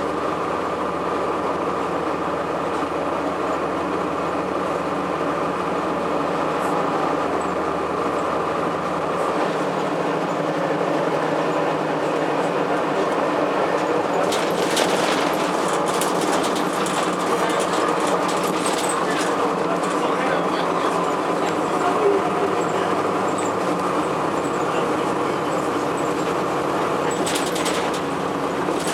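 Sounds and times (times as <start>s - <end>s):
bus diesel engine running: 0.0s - 28.9s
road noise: 0.0s - 28.9s
quick rattles and knocks: 14.2s - 20.0s, 27.1s - 28.9s.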